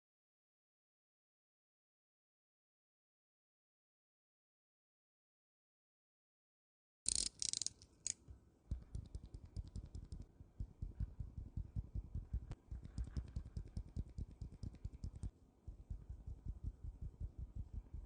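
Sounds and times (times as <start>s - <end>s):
mechanical keyboard typing: 7.1s - 7.8s, 8.8s - 10.2s, 12.8s - 15.3s.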